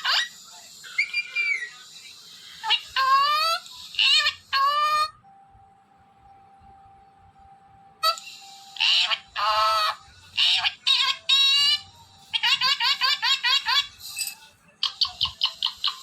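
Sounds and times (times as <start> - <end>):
parrot chirping rapidly: 0.0 - 1.8, 2.6 - 5.2, 8.0 - 16.0
parrot squawking and whistling: 0.0 - 1.8, 2.6 - 5.2, 8.0 - 16.0.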